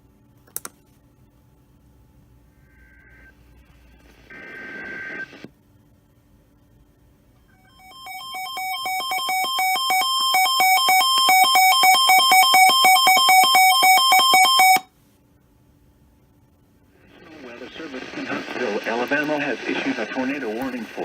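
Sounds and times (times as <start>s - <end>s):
two-pitch electronic alarm beeping: 7.7s - 14.8s.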